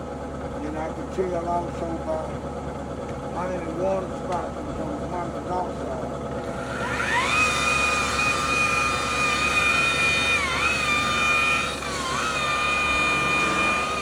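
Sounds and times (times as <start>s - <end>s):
polishing buffer motor whine: 3.2s - 14.0s.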